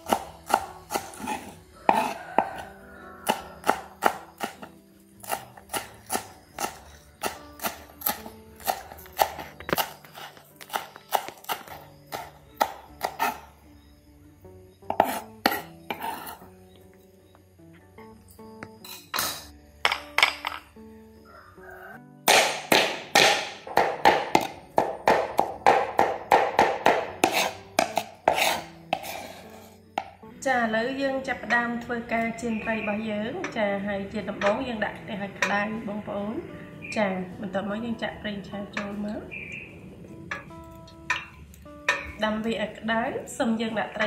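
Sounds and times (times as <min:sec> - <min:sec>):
knife chopping on cutting board: 0:00.0 - 0:02.5, 0:22.3 - 0:29.3
light background music: 0:00.0 - 0:44.0.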